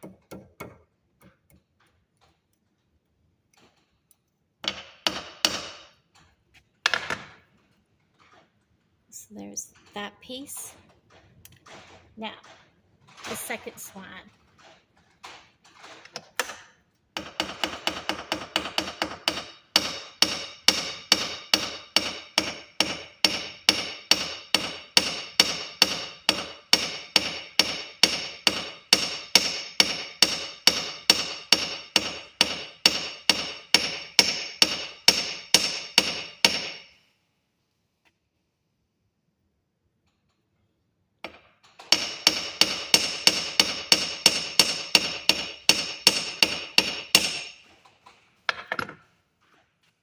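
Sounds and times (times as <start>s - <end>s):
hammer on copper wire: 4.6s - 6.0s, 17.2s - 36.9s, 41.2s - 47.6s.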